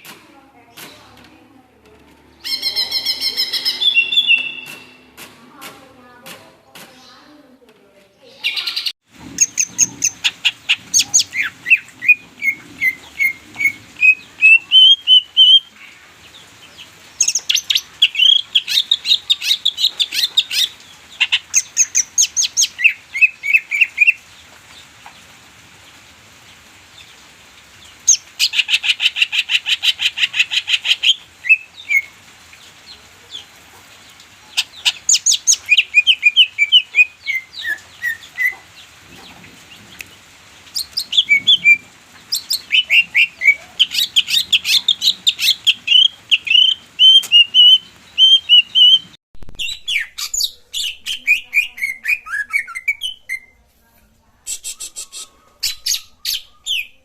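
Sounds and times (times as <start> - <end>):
bird singing chattering notes: 2.3 - 5.2, 8.2 - 16.5, 17.1 - 24.3, 34.6 - 38.6, 40.0 - 53.5.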